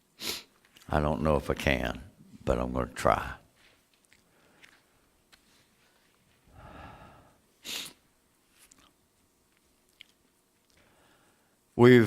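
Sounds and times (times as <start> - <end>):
man breathing close to microphone: 5.8 - 8.0, 10.8 - 11.6.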